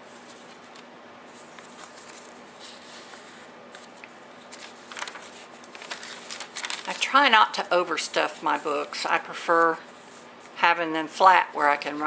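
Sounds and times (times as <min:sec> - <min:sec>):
paper rustling and ticking: 0:00.3 - 0:07.2.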